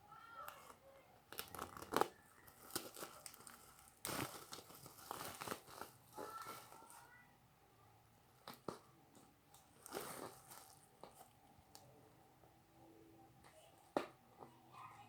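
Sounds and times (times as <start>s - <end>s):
packaging tearing and crinkling: 1.3s - 7.0s, 9.8s - 10.9s.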